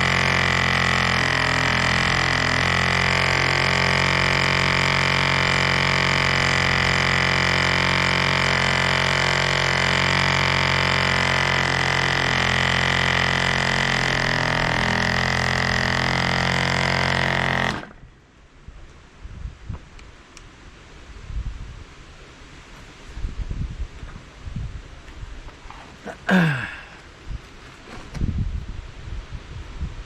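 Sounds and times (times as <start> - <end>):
model airplane engine running: 0.0 - 18.0.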